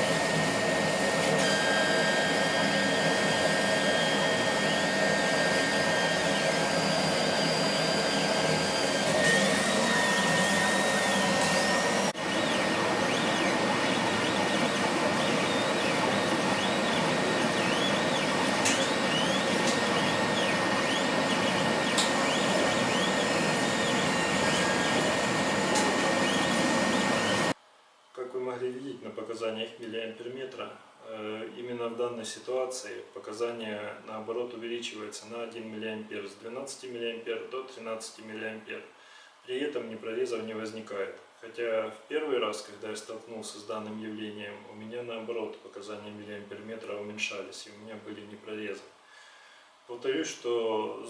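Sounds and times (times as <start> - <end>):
laser cutter rushing noise: 0.0 - 27.6.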